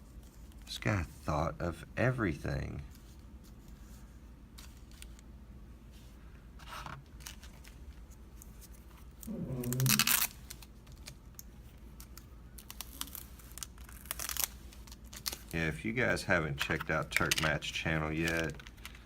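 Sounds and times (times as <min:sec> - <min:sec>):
packaging tearing: 0:09.2 - 0:11.2, 0:12.0 - 0:15.6, 0:18.1 - 0:19.0
packaging rustling: 0:16.6 - 0:19.0.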